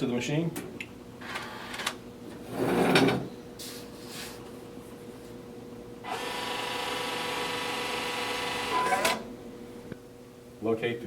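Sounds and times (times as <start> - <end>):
vending machine electrical hum: 0.0 - 11.0.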